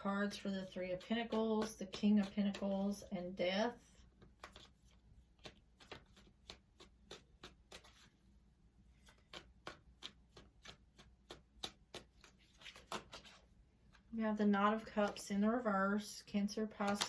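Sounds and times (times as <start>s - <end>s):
cards being shuffled: 0.6s - 3.0s, 4.2s - 8.2s, 8.9s - 14.1s, 16.8s - 17.0s.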